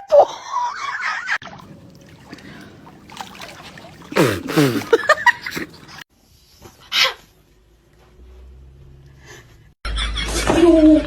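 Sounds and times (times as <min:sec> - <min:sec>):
person laughing: 0:04.1 - 0:06.0.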